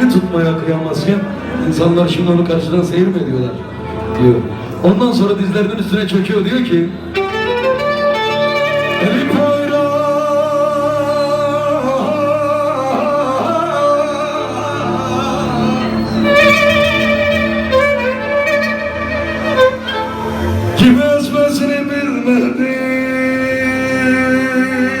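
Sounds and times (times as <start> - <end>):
bowed strings melody: 0.0 - 25.0
person singing: 7.2 - 25.0.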